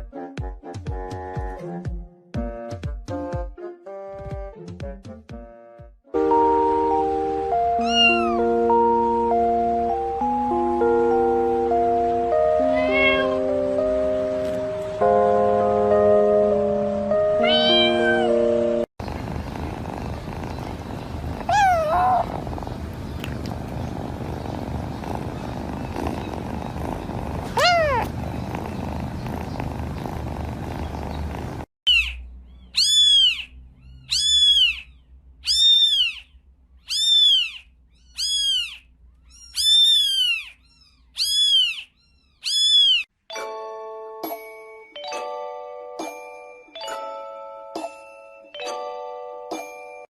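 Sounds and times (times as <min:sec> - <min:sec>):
cat meow: 0:07.8 - 0:08.4, 0:12.7 - 0:13.4, 0:17.4 - 0:18.3, 0:21.3 - 0:22.4, 0:27.5 - 0:28.1
kitten meowing: 0:07.8 - 0:08.4, 0:12.7 - 0:13.4, 0:17.4 - 0:18.3, 0:20.5 - 0:29.4, 0:32.8 - 0:36.2, 0:36.9 - 0:43.0
cat purring: 0:19.0 - 0:31.7
chiming tune: 0:43.3 - 0:50.0.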